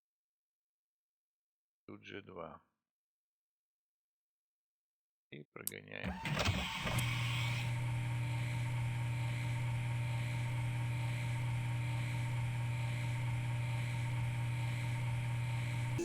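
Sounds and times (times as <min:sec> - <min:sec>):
lathe machine hum: 0:06.1 - 0:16.0.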